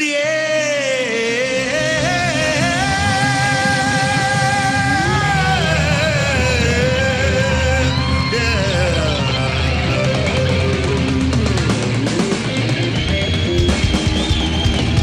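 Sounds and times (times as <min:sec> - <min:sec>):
person singing a long note: 0:00.0 - 0:10.9
band accompaniment: 0:00.0 - 0:15.0.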